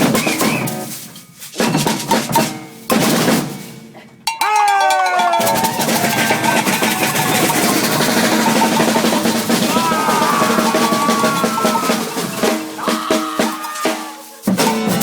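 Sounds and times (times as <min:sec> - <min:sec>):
percussion ensemble drumming: 0:00.0 - 0:01.0, 0:01.6 - 0:15.0
snare drums: 0:00.0 - 0:15.0
bass drums: 0:05.4 - 0:15.0.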